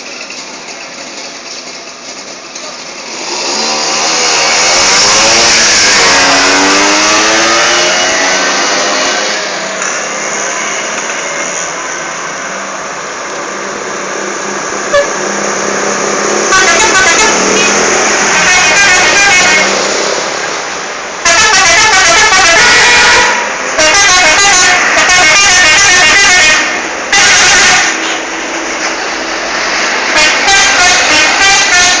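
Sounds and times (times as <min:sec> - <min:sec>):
vehicle engine and road noise: 0:00.0 - 0:32.0
multi-tone musical air horn: 0:16.5 - 0:19.9, 0:21.2 - 0:28.3, 0:30.0 - 0:32.0.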